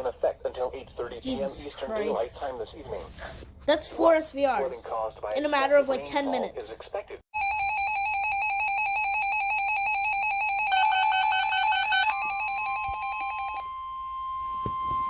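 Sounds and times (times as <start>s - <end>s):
steady single-pitch alarm tone: 7.4s - 15.0s.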